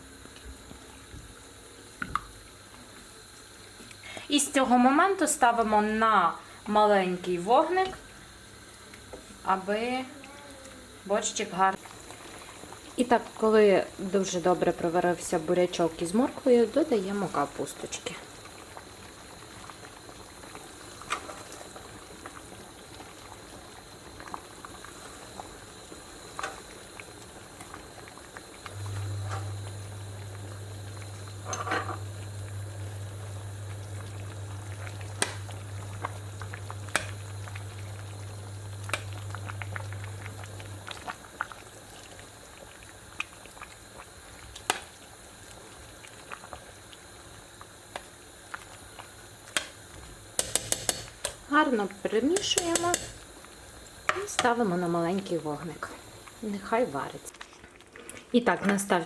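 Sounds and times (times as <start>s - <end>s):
pot bubbling on stove: 0.0s - 59.0s
low steady hum: 28.6s - 41.1s
kitchen utensils clicking: 50.4s - 51.5s, 52.3s - 53.2s.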